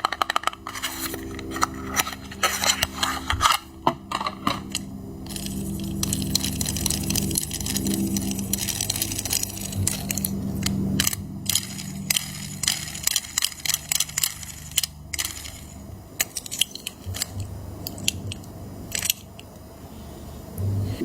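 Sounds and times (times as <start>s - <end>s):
cardboard and plastic crackling: 0.0s - 19.4s
low steady hum: 0.0s - 21.0s.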